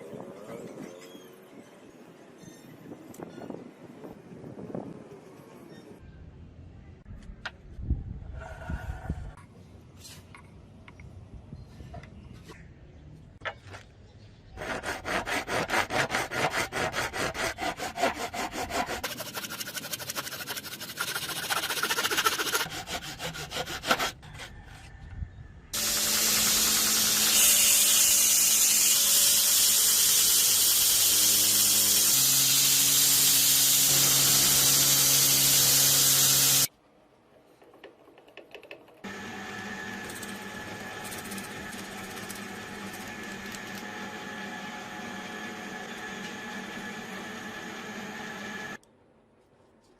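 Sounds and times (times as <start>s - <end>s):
hand filing metal: 14.6s - 24.5s, 41.0s - 43.0s
grinder running: 25.8s - 36.7s, 39.0s - 48.8s
machine hum: 39.1s - 48.8s.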